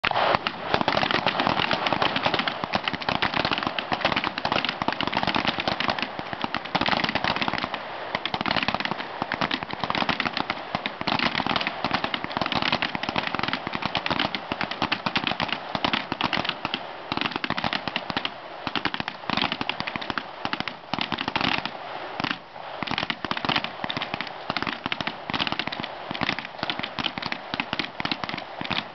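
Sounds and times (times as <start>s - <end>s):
rapid pistol fire: 0.0s - 28.9s.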